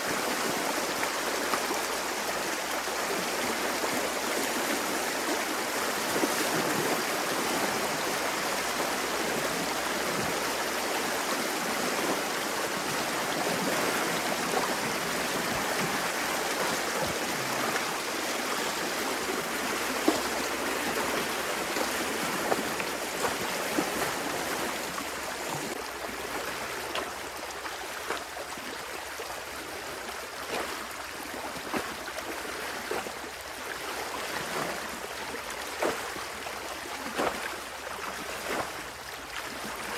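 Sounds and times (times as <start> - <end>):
water rushing: 0.0 - 30.0
water splashes: 0.0 - 39.9.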